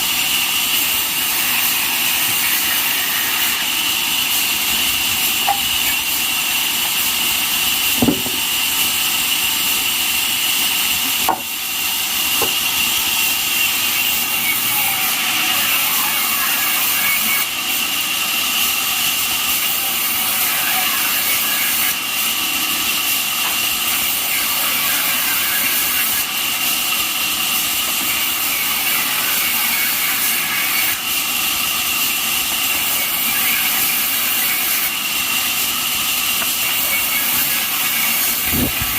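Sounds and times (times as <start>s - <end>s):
band sawmill whining and rushing: 0.0s - 17.5s, 27.8s - 38.9s
sharp knocks: 8.0s - 8.5s.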